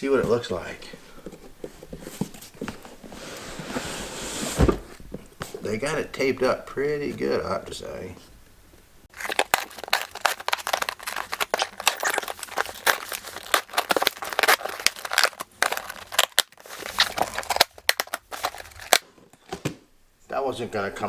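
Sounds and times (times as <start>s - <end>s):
packaging crinkling: 9.1s - 19.0s
packing tape ripping: 9.1s - 19.0s.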